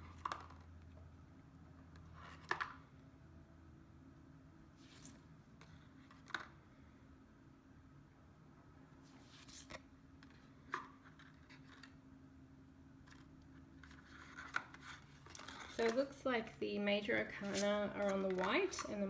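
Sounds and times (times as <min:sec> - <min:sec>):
cards sliding rustle: 0:04.8 - 0:06.6, 0:09.0 - 0:12.0, 0:13.0 - 0:16.2, 0:17.2 - 0:19.0.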